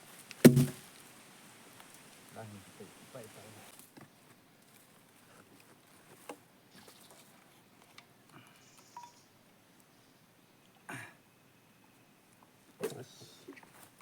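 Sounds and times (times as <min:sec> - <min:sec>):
faint brief knocks: 0:00.4 - 0:00.8.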